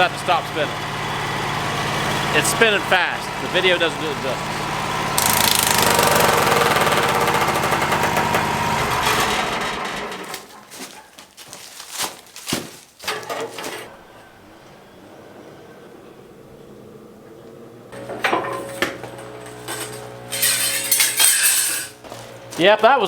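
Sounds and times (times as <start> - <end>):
band sawmill running: 0.0 - 11.6, 12.6 - 23.0
sharp metallic knocks: 5.2 - 10.4.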